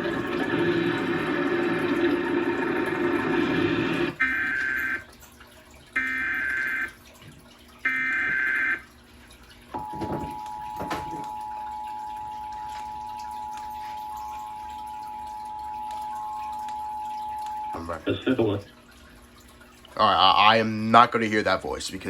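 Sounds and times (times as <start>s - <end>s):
two-tone attention signal: 4.0s - 5.1s, 6.0s - 7.0s, 7.9s - 8.8s, 9.8s - 18.0s.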